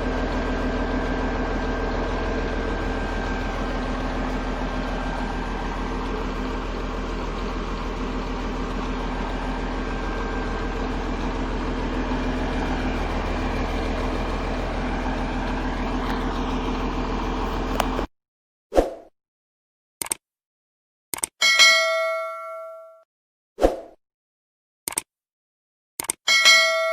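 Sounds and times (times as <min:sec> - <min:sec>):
bulldozer diesel engine running: 0:00.0 - 0:18.1.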